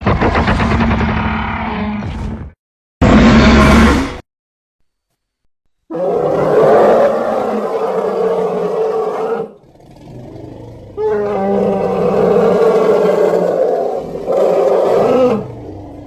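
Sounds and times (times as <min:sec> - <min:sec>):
monster pained roar: 0:10.2 - 0:16.0.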